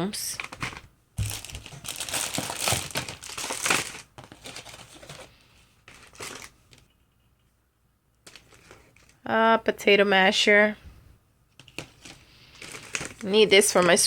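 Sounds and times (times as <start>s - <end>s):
crinkly plastic packaging crackling: 0.1s - 6.8s, 8.2s - 9.3s, 11.6s - 14.0s.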